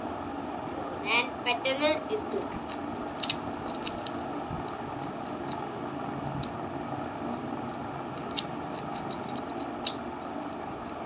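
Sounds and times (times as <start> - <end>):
puzzle cube plastic clicks: 2.6 - 5.6, 8.2 - 11.0.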